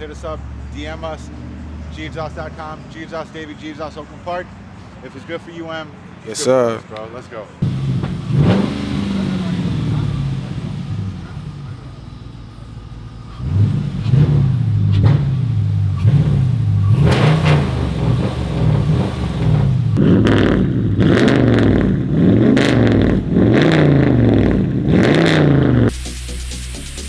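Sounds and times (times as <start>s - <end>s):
car engine revving: 7.6s - 27.0s.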